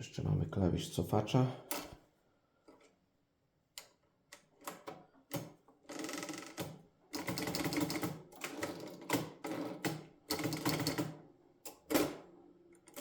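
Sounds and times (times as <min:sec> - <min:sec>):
typewriter rapid rattling run: 0:07.2 - 0:08.9.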